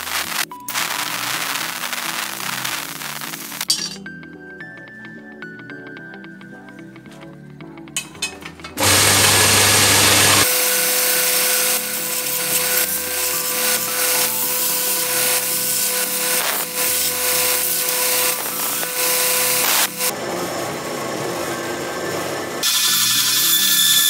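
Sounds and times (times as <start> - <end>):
power tool cutting with whine: 8.8 - 24.0.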